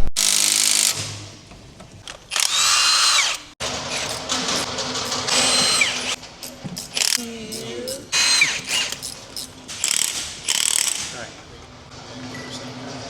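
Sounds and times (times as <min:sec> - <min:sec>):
power tool whine: 0:02.4 - 0:06.2.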